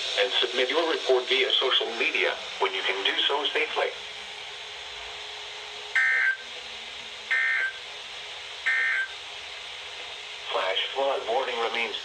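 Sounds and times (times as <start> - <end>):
radio hiss: 0.0 - 4.2, 10.4 - 12.0
two-tone digital warble: 6.0 - 6.4, 7.3 - 7.8, 8.7 - 9.2.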